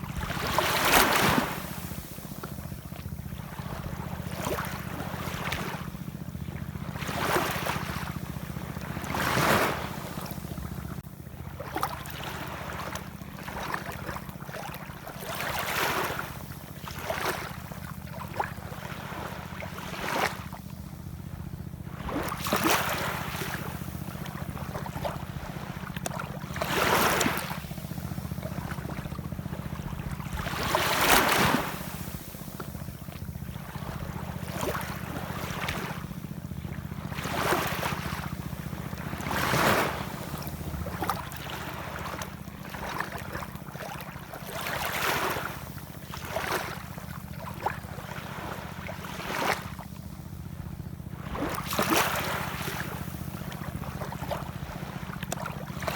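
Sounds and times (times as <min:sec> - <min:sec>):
ocean waves washing in: 0:00.0 - 0:05.9, 0:21.9 - 0:46.9
steady low rumble: 0:20.5 - 0:43.7.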